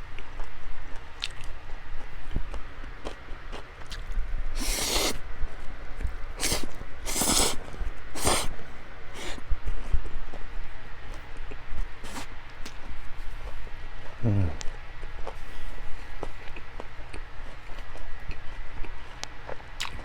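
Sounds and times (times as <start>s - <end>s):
person chewing: 1.2s - 1.6s, 3.0s - 5.2s, 6.4s - 8.5s, 9.2s - 9.4s, 12.0s - 12.8s, 16.2s - 20.0s
short noisy bursts: 4.6s - 5.2s, 6.4s - 7.6s
wet mouth sounds: 4.6s - 5.2s, 6.4s - 7.6s, 8.2s - 8.5s, 9.2s - 9.4s, 12.0s - 12.2s.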